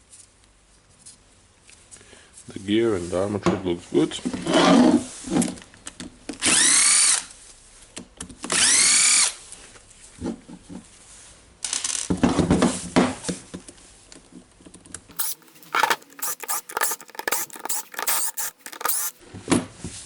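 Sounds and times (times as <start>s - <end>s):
cordless screwdriver whirring: 15.2s - 19.2s.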